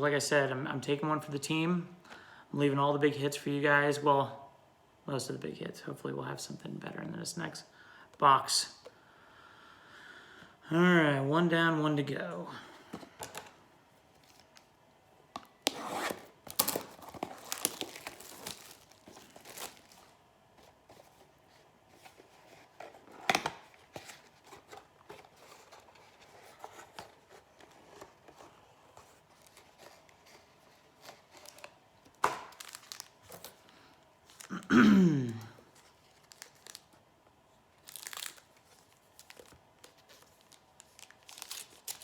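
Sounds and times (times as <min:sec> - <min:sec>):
plastic wrapping being torn: 0:15.6 - 0:20.1, 0:31.3 - 0:33.6, 0:36.0 - 0:36.9, 0:37.8 - 0:42.0.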